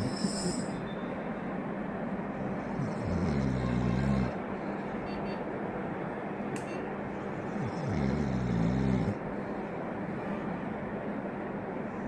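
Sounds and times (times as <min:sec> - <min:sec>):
person snoring: 0:00.0 - 0:00.8, 0:02.7 - 0:04.4, 0:07.6 - 0:09.2.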